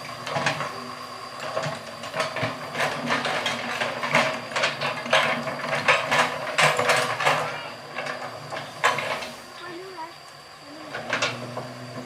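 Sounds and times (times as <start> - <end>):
excavator engine hum: 0.0 - 12.0
metallic clanks and knocks: 1.4 - 9.4, 10.9 - 12.0.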